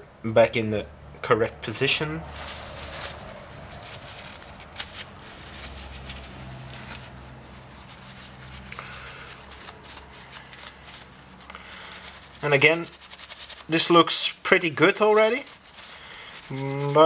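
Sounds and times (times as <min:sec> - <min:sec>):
light metallic clicks and rubbing: 0:03.8 - 0:13.7.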